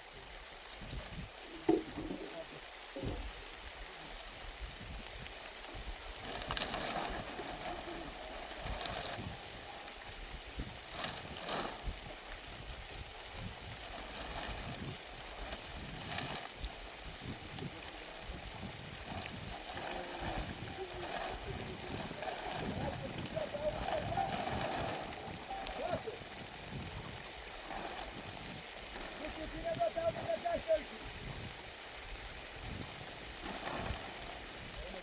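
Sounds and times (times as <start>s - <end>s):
heavy rain falling: 0.0s - 35.0s.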